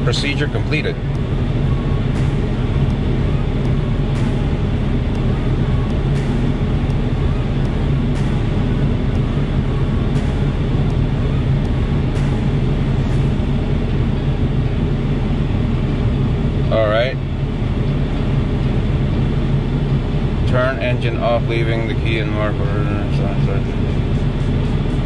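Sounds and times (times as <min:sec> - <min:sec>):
diesel engine idling: 0:00.0 - 0:14.1.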